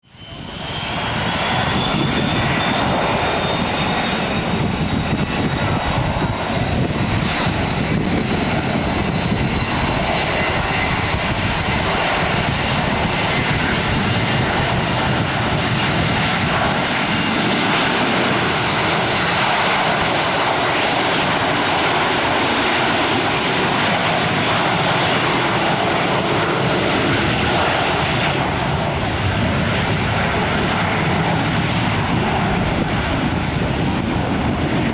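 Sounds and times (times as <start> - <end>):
jet engines running: 0.1 - 34.9.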